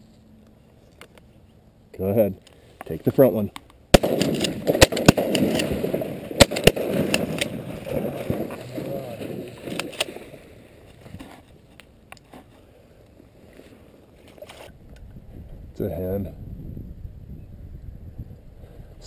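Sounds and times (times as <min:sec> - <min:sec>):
shotgun blasts: 0:03.9 - 0:10.4.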